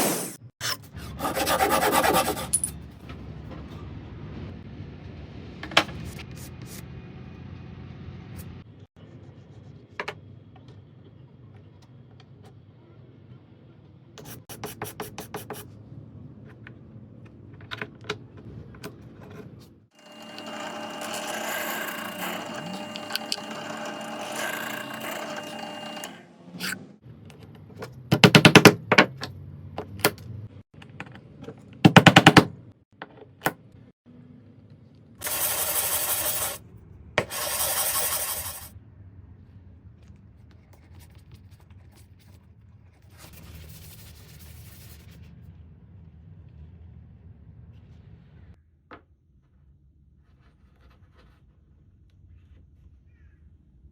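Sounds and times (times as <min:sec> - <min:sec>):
tool scraping wood: 0:00.0 - 0:02.7, 0:20.0 - 0:26.8, 0:35.2 - 0:36.6, 0:37.2 - 0:38.7
small power tool running: 0:20.0 - 0:26.3.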